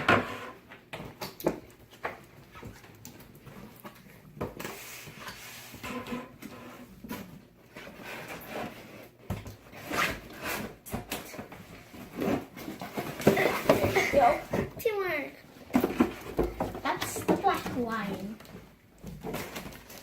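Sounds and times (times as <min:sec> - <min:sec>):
cardboard box rustling and scraping: 0:04.6 - 0:14.9, 0:15.6 - 0:20.0.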